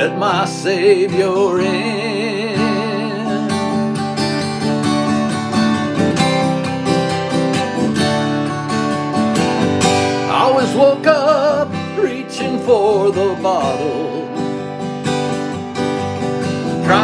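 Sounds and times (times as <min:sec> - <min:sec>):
acoustic guitar strumming: 0:00.0 - 0:17.0
person singing country song: 0:00.0 - 0:17.0.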